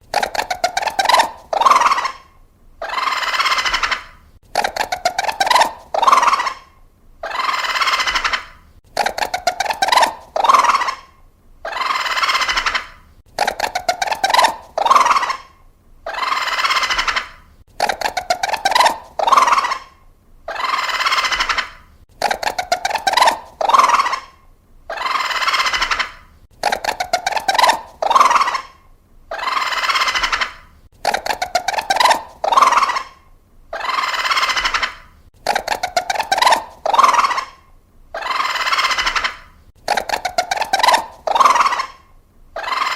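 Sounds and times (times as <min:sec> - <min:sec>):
raccoon squealing cry: 0:00.6 - 0:04.1, 0:05.2 - 0:08.6, 0:11.7 - 0:12.9, 0:13.7 - 0:17.4, 0:18.2 - 0:21.8, 0:22.7 - 0:26.2, 0:26.8 - 0:30.7, 0:33.8 - 0:35.0, 0:35.7 - 0:42.9
raccoon raspy trill: 0:22.2 - 0:42.9
raccoon chittering: 0:35.4 - 0:37.5, 0:38.2 - 0:42.0.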